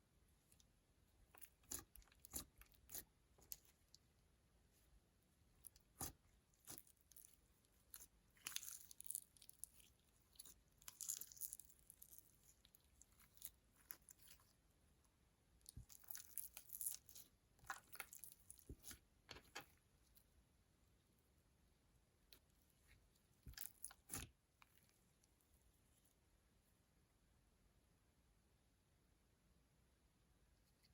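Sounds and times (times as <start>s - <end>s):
slime crackling and popping: 5.6s - 14.5s.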